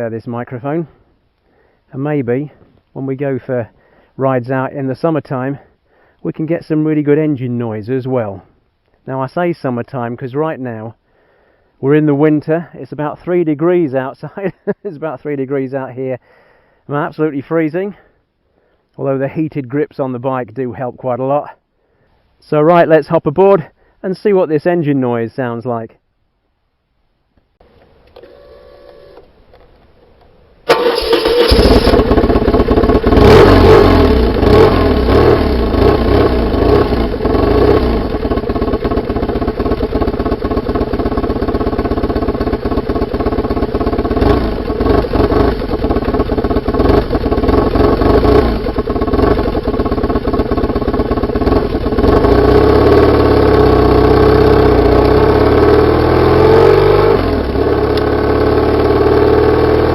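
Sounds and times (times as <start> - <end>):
motorcycle engine and exhaust: 30.8 - 59.9.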